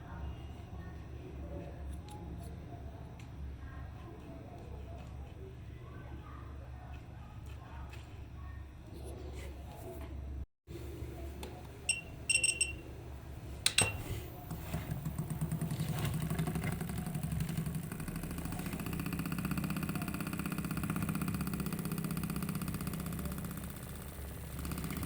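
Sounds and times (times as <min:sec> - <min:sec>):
short high beeps: 0:11.9 - 0:12.8.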